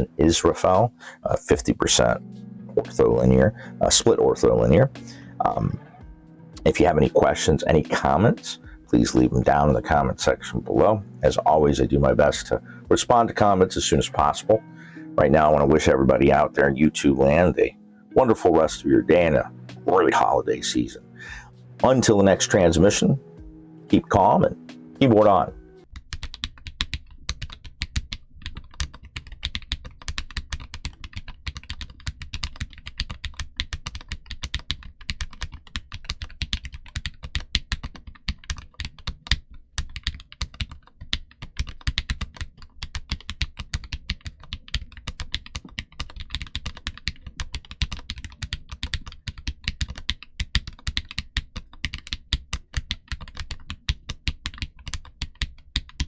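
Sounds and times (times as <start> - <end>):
fast mechanical keyboard typing: 25.9 - 56.0.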